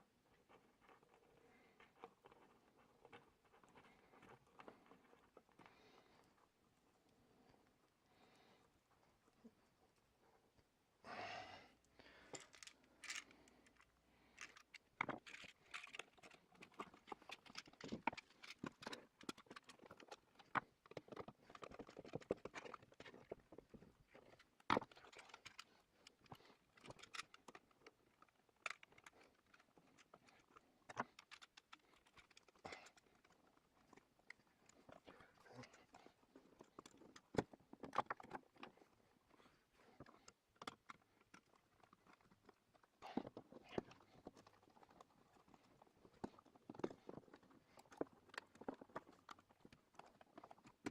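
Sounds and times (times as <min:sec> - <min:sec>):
small clicks and crackles of wiring: 0:11.8 - 0:50.9.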